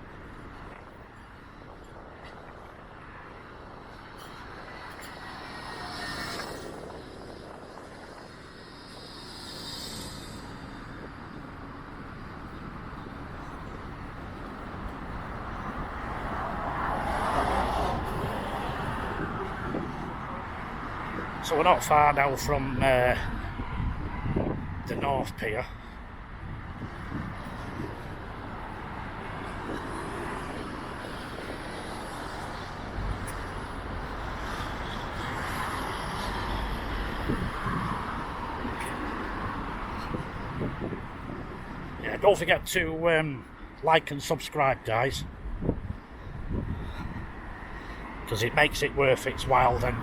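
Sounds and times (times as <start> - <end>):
road traffic passing: 0.0 - 50.0
road vehicle passing by: 14.2 - 21.5.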